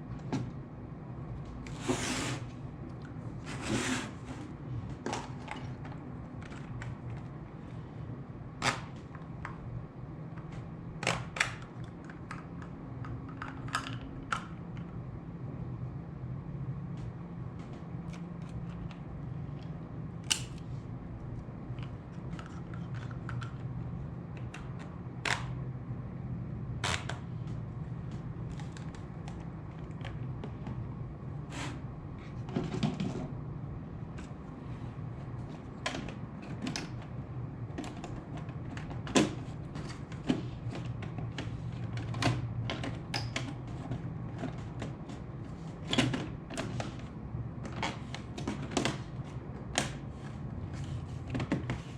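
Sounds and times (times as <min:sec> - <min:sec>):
steady low hum: 0:00.0 - 0:51.9.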